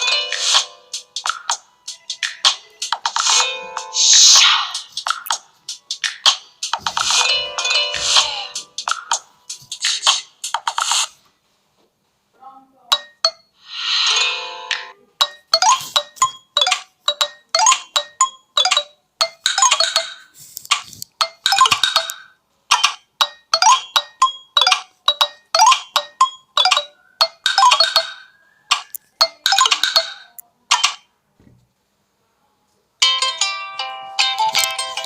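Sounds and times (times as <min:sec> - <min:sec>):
phone ringtone mallet notes: 0:00.0 - 0:01.0, 0:03.2 - 0:04.1, 0:07.1 - 0:08.7, 0:12.9 - 0:20.3, 0:21.2 - 0:30.4.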